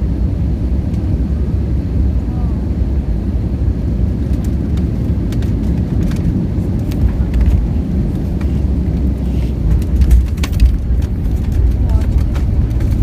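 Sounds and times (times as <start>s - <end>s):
aircraft low rumble: 0.0s - 13.0s
light clicks and rattles: 9.7s - 13.0s.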